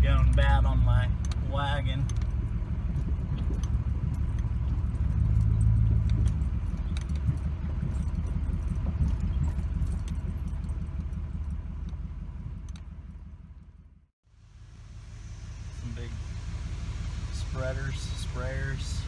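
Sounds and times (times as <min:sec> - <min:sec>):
vehicle engine humming: 0:00.0 - 0:19.0
wagon rattling and jingling: 0:01.5 - 0:12.6.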